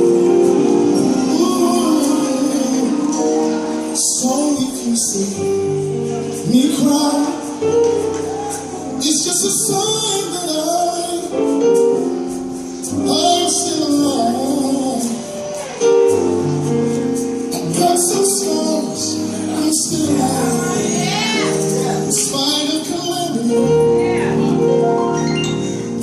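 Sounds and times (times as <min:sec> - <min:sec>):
woman singing over chords: 0:18.7 - 0:22.7.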